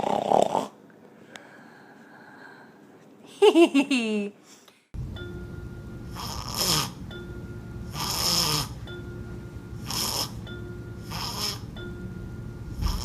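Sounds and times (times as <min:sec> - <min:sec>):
person snoring: 0:06.1 - 0:07.0, 0:07.9 - 0:08.9, 0:09.8 - 0:10.4, 0:11.0 - 0:11.7, 0:12.7 - 0:13.0.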